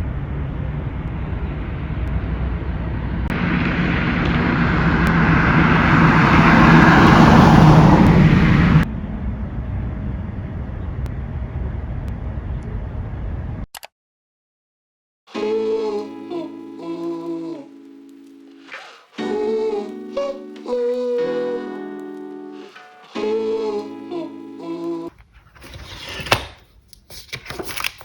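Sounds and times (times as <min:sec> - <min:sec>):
motor vehicle rumble: 0:00.0 - 0:13.7.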